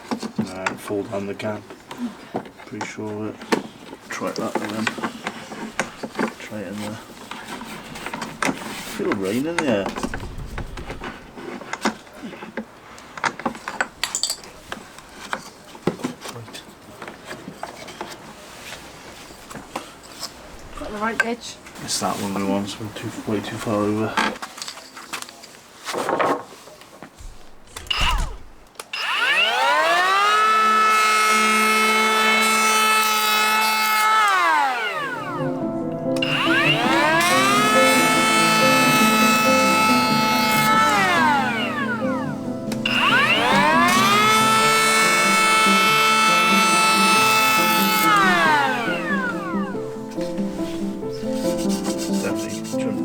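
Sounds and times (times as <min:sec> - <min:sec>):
power tool motor whining: 0:27.8 - 0:51.0.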